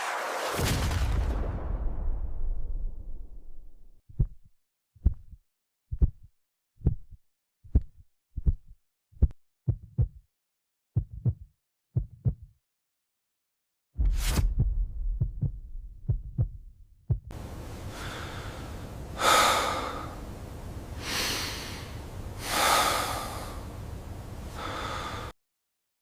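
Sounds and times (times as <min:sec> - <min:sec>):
low thumps: 0:14.0 - 0:17.4
low steady rumble: 0:14.6 - 0:24.5
person breathing heavily: 0:17.7 - 0:20.3, 0:21.0 - 0:23.8, 0:24.5 - 0:25.4.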